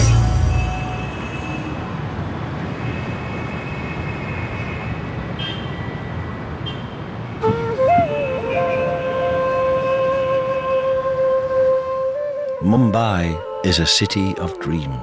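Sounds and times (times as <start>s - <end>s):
faint high tones: 0.0s - 2.1s
city traffic rumble: 0.0s - 8.7s.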